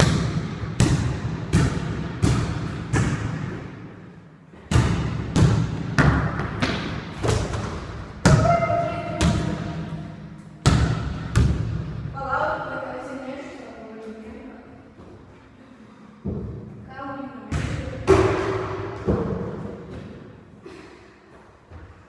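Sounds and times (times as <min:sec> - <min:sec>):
basketball bouncing on hard floor: 0:00.0 - 0:03.6, 0:04.6 - 0:09.7, 0:10.6 - 0:11.8.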